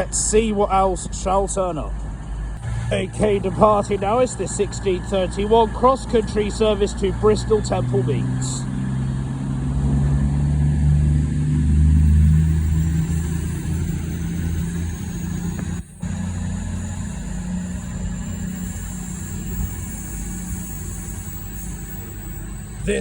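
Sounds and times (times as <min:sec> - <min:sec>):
diesel train engines under power: 0:00.0 - 0:23.0.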